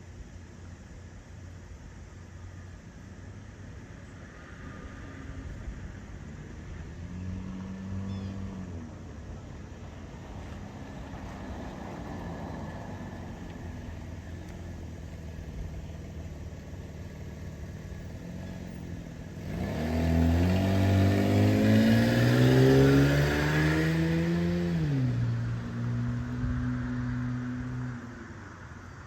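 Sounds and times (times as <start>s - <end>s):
engine running and revving: 6.2s - 9.2s, 11.0s - 28.7s.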